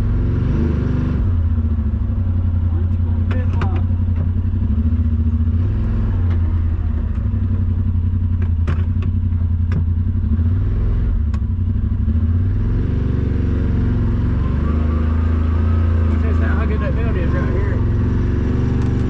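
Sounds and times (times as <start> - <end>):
utv engine running under load: 0.0 - 19.0.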